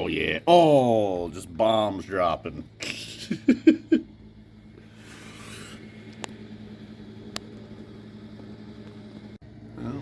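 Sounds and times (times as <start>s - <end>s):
idling machine engine: 0.0s - 10.0s.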